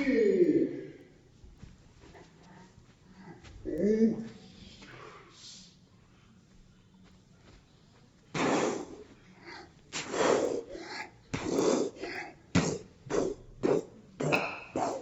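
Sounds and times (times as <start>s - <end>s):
person making breathy bursts: 9.9s - 13.9s.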